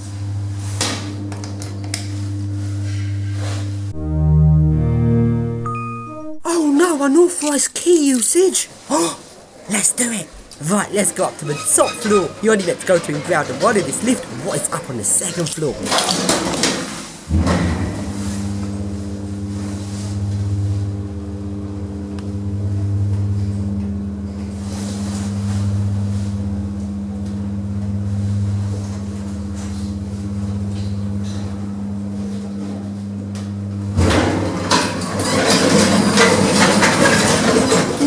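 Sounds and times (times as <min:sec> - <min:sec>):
lift machinery humming: 0:08.4 - 0:16.0.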